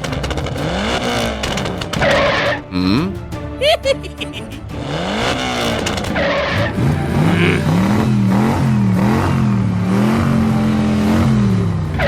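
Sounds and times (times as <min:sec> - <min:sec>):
vehicle engine revving: 0:00.0 - 0:03.0, 0:04.6 - 0:12.0.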